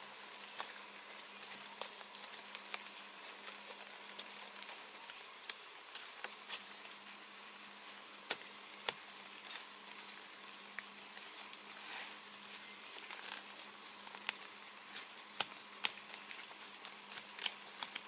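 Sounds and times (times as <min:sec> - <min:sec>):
high insect drone: 0:00.0 - 0:18.0.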